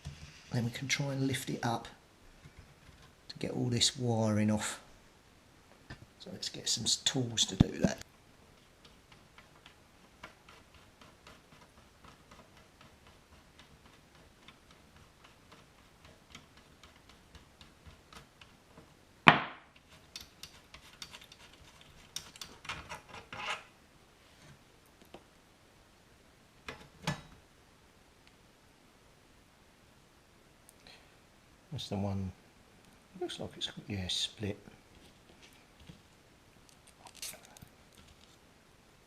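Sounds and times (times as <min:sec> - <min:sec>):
sharp knock of object set down: 0:19.3 - 0:19.7.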